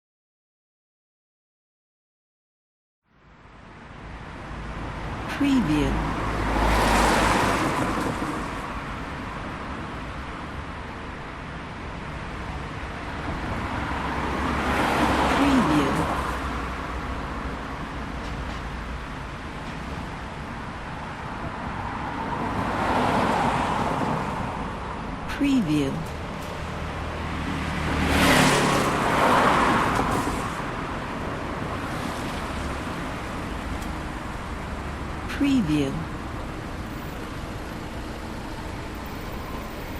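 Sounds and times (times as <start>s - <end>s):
steady traffic noise: 3.0s - 39.9s
vehicle passing close by: 6.0s - 8.8s, 13.4s - 16.8s, 21.8s - 24.7s, 26.2s - 33.2s
vehicle passing close: 26.0s - 33.0s.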